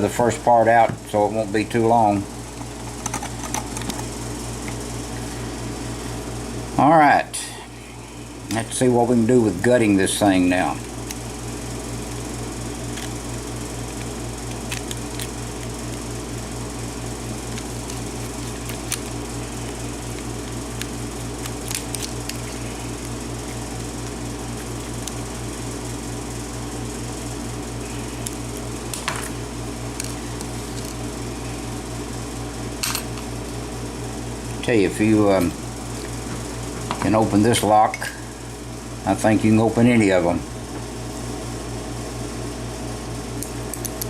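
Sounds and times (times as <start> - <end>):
steady background hum: 0.0 - 44.0
small clicks of metal tools: 43.7 - 44.0.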